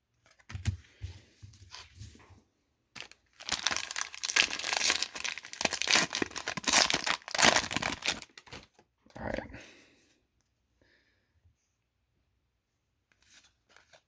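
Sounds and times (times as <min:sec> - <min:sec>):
foil wrapper crinkling: 0:03.0 - 0:08.7.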